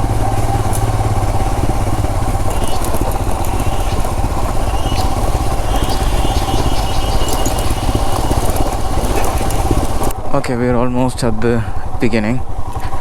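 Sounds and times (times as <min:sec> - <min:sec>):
light clicks and rattles: 0:00.0 - 0:10.1
motorcycle engine running: 0:00.0 - 0:10.4.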